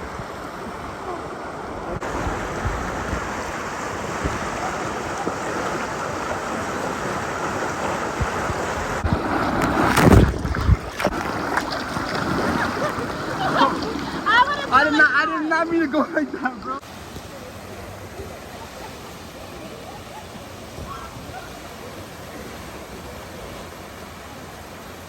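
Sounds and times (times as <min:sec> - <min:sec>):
rushing water: 0:00.0 - 0:25.0
wind buffeting microphone: 0:01.6 - 0:14.7
wind and spray burst: 0:01.9 - 0:14.0.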